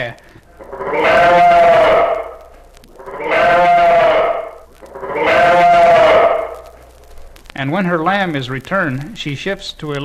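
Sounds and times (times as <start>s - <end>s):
ewe bleating: 0.6s - 6.7s.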